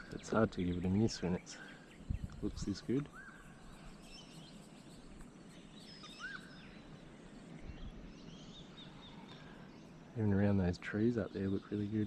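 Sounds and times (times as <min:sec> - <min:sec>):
high bird chirps: 0:00.0 - 0:10.0
faint steady background noise: 0:00.0 - 0:12.0
bird whistles: 0:05.8 - 0:06.7.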